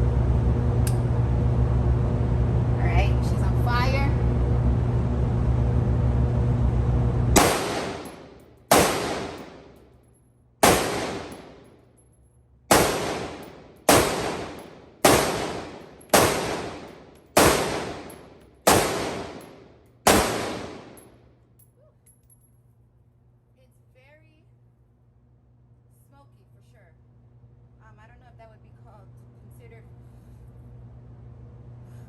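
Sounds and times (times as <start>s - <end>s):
steady low hum: 0.0s - 32.0s
rifle shots with echo: 7.4s - 9.8s, 10.6s - 11.7s, 12.7s - 21.1s.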